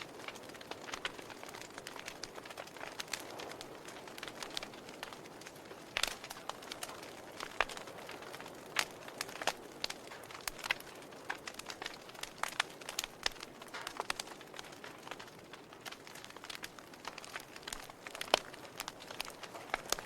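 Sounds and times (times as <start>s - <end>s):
wood fire crackling and popping: 0.0s - 20.0s.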